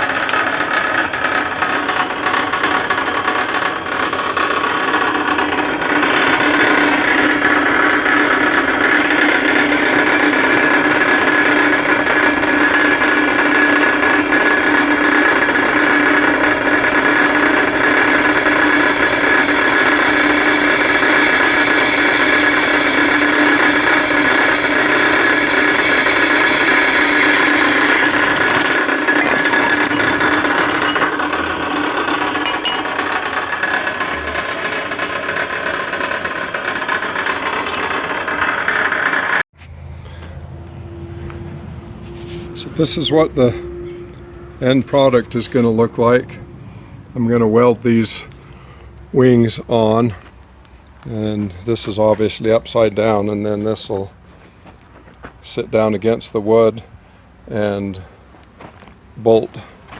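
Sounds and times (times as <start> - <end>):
bandsaw cutting steel: 0.0 - 39.4.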